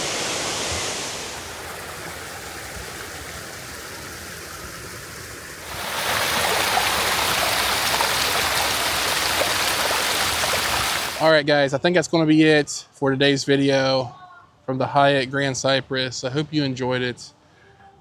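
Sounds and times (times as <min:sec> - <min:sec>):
waterfall pouring into pool: 0:00.0 - 0:11.2.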